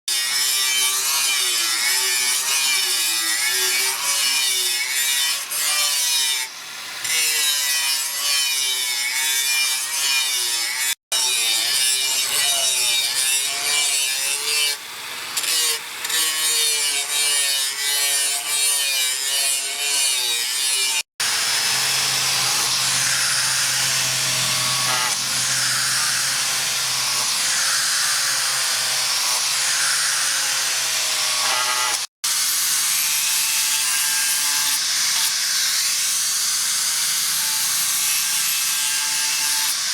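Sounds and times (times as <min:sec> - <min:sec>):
metal-cutting tool scraping steel: 0:00.3 - 0:32.1.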